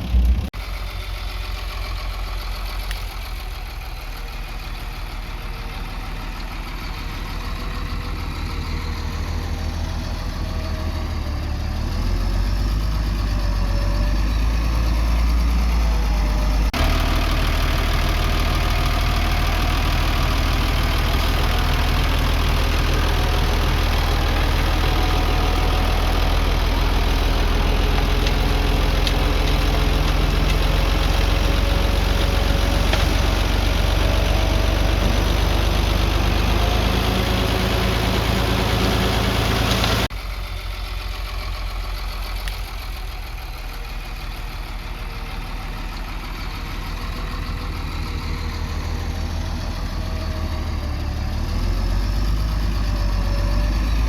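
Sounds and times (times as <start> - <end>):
diesel engine running: 0.0 - 54.0.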